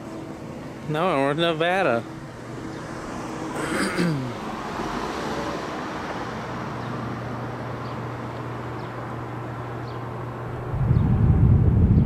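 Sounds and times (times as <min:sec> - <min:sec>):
low even hum: 0:08.0 - 0:12.0.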